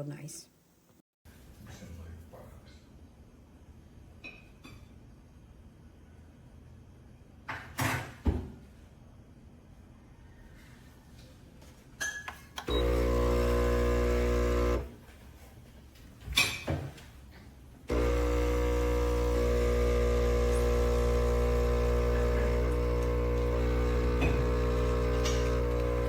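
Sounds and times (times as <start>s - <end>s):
espresso machine pump humming: 12.7s - 15.0s, 17.9s - 26.0s.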